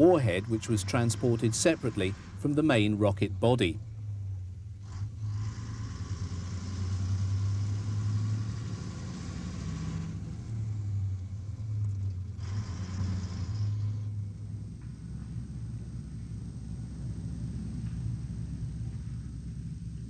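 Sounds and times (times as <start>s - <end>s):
vehicle engine rumbling: 0.0s - 20.0s
hiss: 12.4s - 14.1s.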